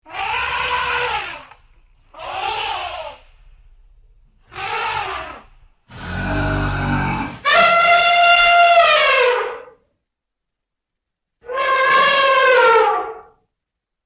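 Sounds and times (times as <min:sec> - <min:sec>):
elephant calls: 0:04.5 - 0:09.6.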